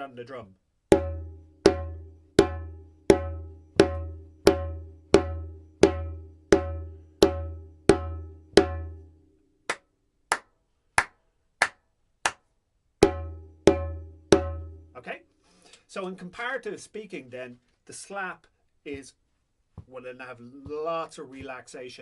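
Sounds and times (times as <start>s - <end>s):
sharp dry drum strikes: 0.9s - 9.0s, 13.0s - 15.0s
djembe open tones: 0.9s - 9.2s, 13.0s - 15.0s.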